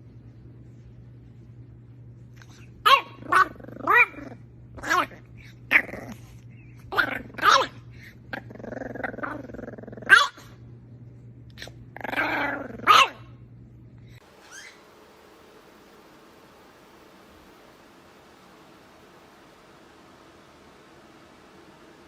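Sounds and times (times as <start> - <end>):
dog growling: 2.4 - 10.5, 11.6 - 13.3
dog barking: 2.8 - 5.1, 6.9 - 7.8, 10.1 - 10.5, 12.8 - 13.3.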